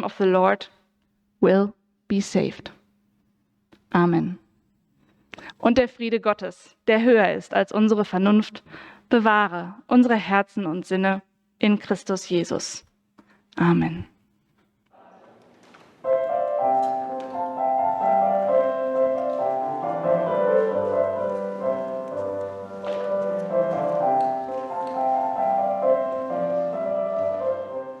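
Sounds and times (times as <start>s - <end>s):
piano playing: 16.0s - 28.0s.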